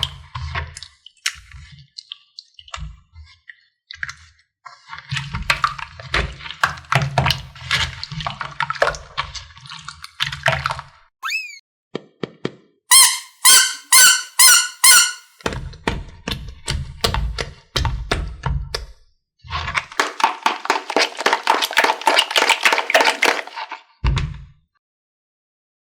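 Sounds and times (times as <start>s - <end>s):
slime squeaks: 11.2s - 11.6s, 12.9s - 15.2s.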